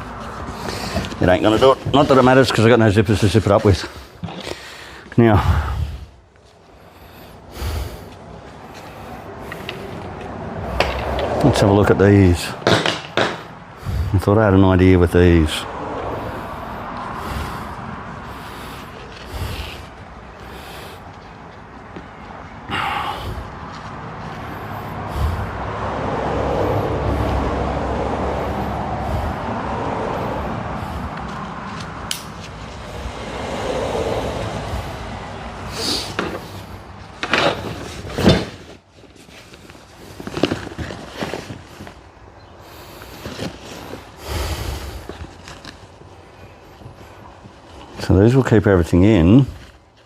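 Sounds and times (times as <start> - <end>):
canvas bag rustling and scraping: 0.0 - 2.7, 35.7 - 48.1
sharp clicks and knocks: 12.6 - 13.5.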